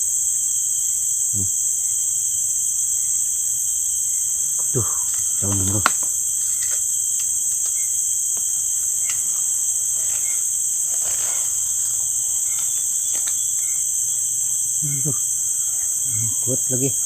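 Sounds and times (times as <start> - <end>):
insects trilling: 0.0 - 17.0
faint ticks: 4.4 - 14.0.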